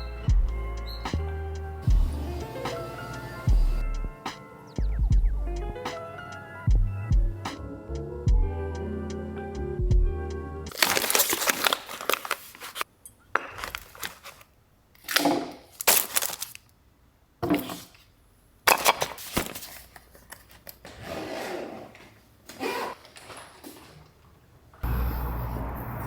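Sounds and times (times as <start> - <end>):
background music: 0.0 - 10.8
handling rustling and scraping: 10.7 - 14.5, 17.4 - 18.1, 18.7 - 24.2.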